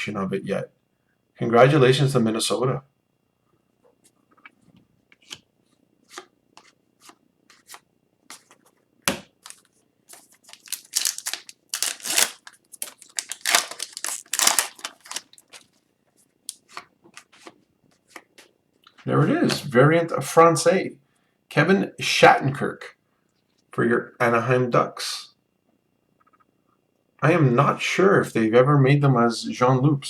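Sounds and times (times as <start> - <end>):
cards sliding and rustling: 6.0 - 8.8, 9.4 - 15.7, 16.5 - 18.3
trading cards clicking: 10.5 - 15.6.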